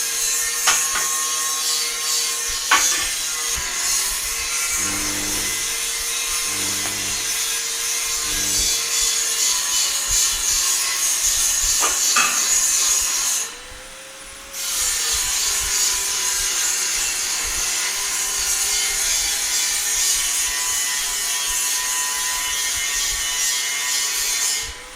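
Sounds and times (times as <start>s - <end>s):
power tool cutting iron: 0.0s - 24.9s
low humming tone: 3.6s - 9.0s.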